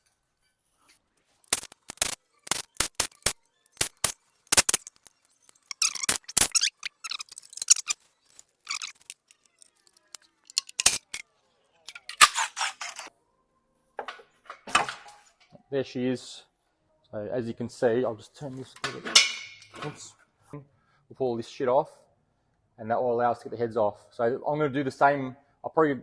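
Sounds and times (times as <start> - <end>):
metal tools clinking and clanking: 1.5 - 11.2, 11.9 - 13.1.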